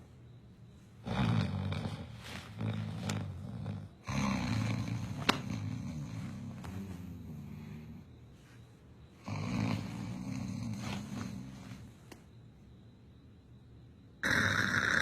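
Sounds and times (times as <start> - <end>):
person snoring heavily: 1.0 - 8.1, 9.2 - 11.9, 14.2 - 15.0.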